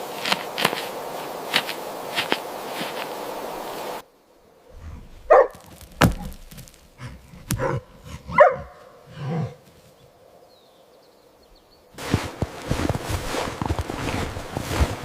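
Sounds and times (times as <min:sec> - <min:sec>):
dog barking: 0:05.2 - 0:05.8, 0:07.0 - 0:09.6
sharp knocks: 0:05.6 - 0:06.8
dog grunting: 0:06.9 - 0:09.6.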